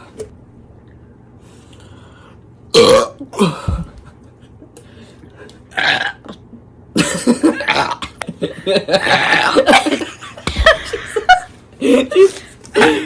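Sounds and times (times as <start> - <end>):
person burping loudly: 2.7 - 3.6, 5.7 - 6.4, 7.4 - 8.2, 9.0 - 9.7.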